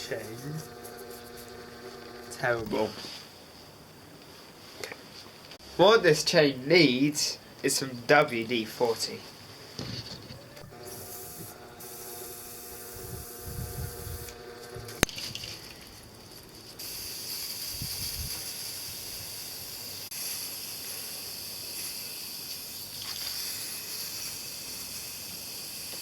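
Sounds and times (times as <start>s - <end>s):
aerosol can spraying hiss: 10.8s - 14.3s, 15.4s - 26.0s.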